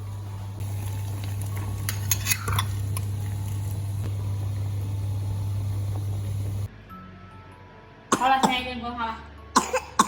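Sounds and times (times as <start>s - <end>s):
pot boiling: 0.0s - 6.7s
utensil scraping a pot: 1.7s - 3.1s
low hum: 2.7s - 6.7s.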